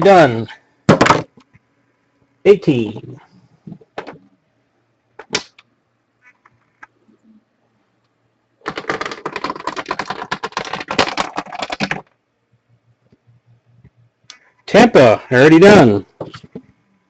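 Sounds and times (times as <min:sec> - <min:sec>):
rapid typing on keyboard: 0:08.6 - 0:12.1.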